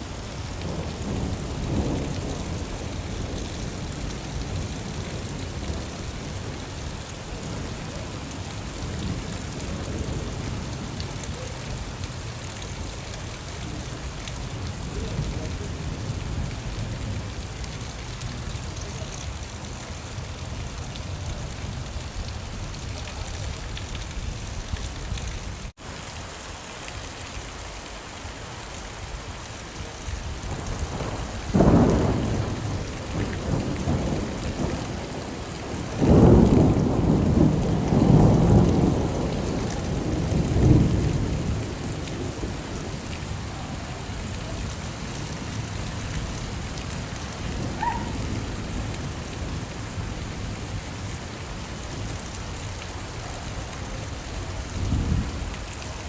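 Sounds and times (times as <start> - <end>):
steady rain: 0.0 - 56.0
thunder rumbling: 30.2 - 51.0, 53.4 - 55.6.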